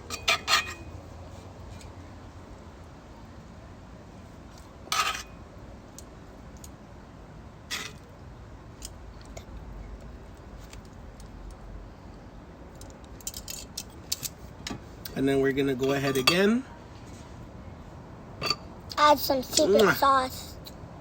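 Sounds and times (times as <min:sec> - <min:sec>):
metal utensil clinking on dishes: 0:15.8 - 0:16.5.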